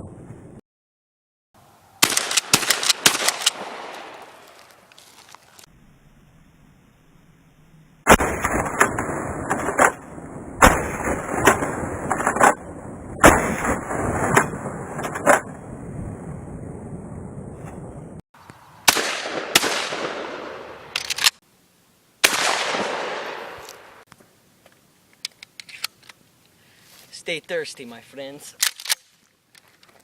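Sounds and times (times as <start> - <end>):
shotgun blasts: 2.0 - 4.4, 8.1 - 12.6, 13.2 - 15.4, 18.9 - 21.0, 22.2 - 24.0.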